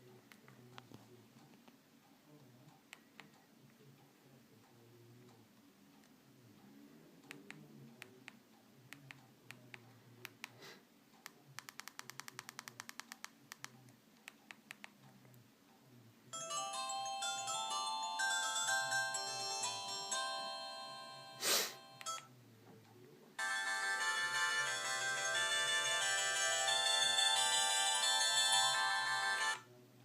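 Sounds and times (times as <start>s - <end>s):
sharp clicks: 11.2s - 15.0s
phone ringtone melody: 16.4s - 22.3s, 23.4s - 29.7s.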